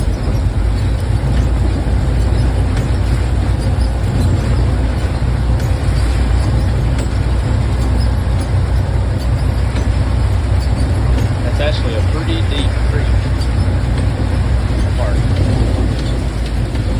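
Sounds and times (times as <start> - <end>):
deep rumble: 0.0 - 16.9
heavy rain: 0.0 - 16.9.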